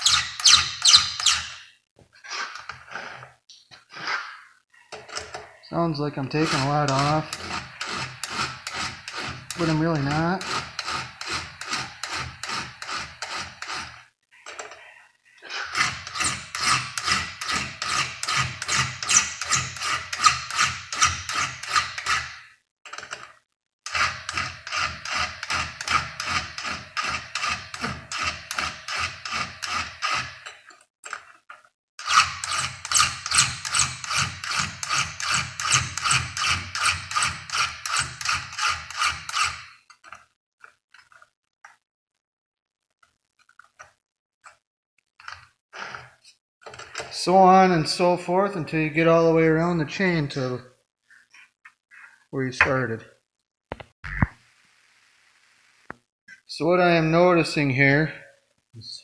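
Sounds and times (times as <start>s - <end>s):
file rasping on chainsaw chain: 6.2s - 14.1s, 15.5s - 22.5s, 23.9s - 30.7s, 32.0s - 39.8s.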